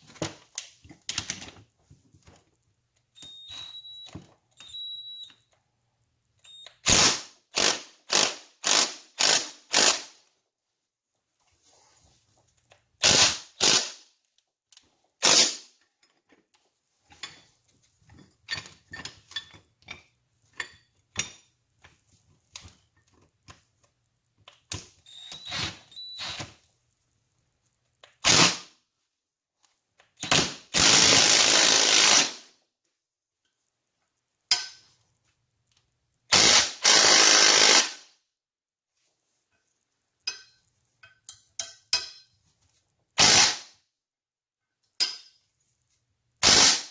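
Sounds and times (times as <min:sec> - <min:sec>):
handheld power tool running: 0:06.9 - 0:10.1, 0:30.8 - 0:32.4, 0:36.3 - 0:38.0, 0:43.2 - 0:43.6, 0:46.4 - 0:46.9.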